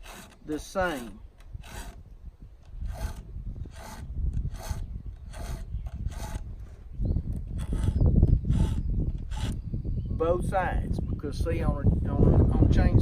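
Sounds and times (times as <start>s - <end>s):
file rasping on chainsaw chain: 0.0s - 2.0s, 2.7s - 6.5s, 7.6s - 9.6s.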